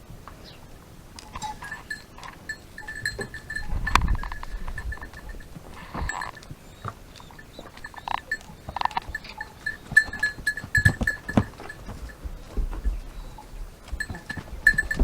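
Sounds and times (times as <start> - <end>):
goats bleating: 4.3 - 12.0.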